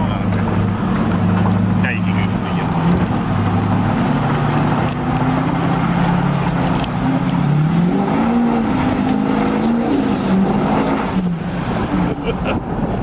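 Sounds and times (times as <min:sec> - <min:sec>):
rushing driving noise: 0:00.0 - 0:13.0
vehicle engine humming: 0:00.0 - 0:13.0.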